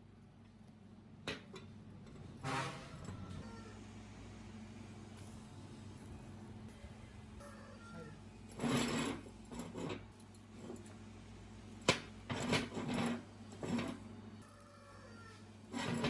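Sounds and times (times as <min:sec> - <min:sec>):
metal tools clinking and scraping: 0:07.4 - 0:11.0.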